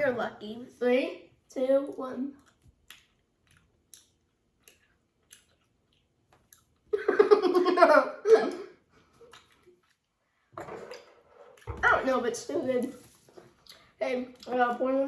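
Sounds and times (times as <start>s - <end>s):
wet mouth clicks: 2.4s - 6.8s
chewing jelly beans: 2.4s - 6.9s
child laughing: 6.9s - 8.7s.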